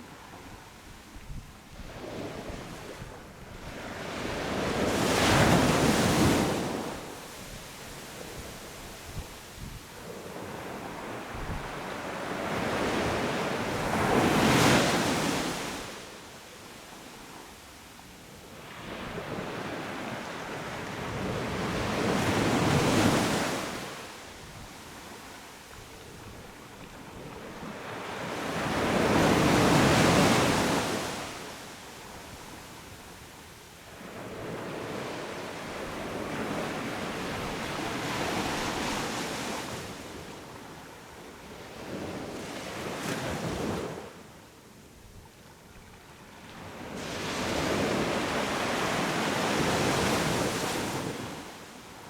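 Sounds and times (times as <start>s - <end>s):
sea waves breaking on beach: 3.7s - 9.2s.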